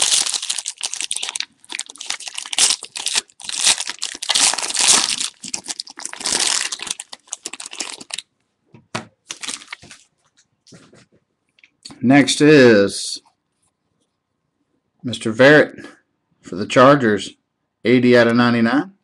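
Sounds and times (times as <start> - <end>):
card pack wrapper tearing: 0.0 - 8.2, 9.3 - 10.0.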